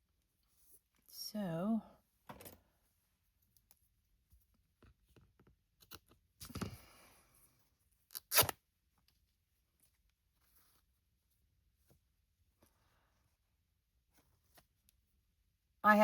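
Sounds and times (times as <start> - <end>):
fabric tearing: 8.1 - 8.6.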